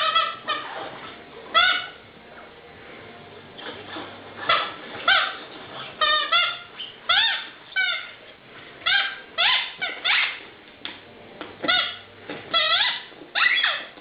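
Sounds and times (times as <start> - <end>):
squeaky dog toy squeaks: 6.0 - 8.2, 8.9 - 10.4, 11.6 - 13.9.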